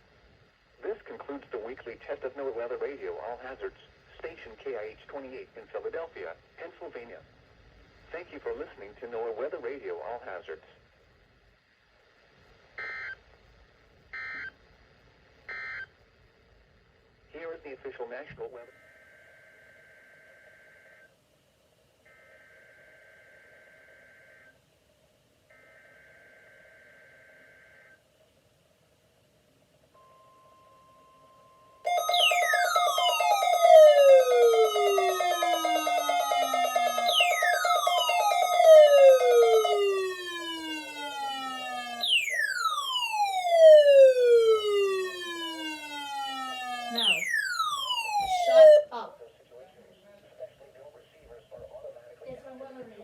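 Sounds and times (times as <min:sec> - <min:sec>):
faint electronic ringing tone: 0:30.0 - 0:48.8.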